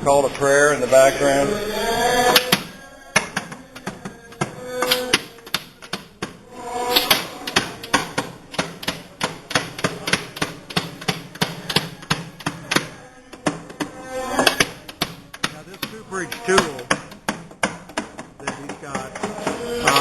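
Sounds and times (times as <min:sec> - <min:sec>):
hammer striking wooden barrel: 0:14.5 - 0:20.0.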